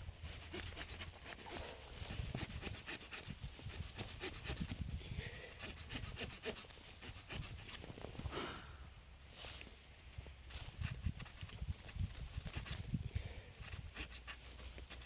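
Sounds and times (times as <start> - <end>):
saw blade cutting wood: 0.2 - 4.7, 5.5 - 7.8, 13.6 - 15.0.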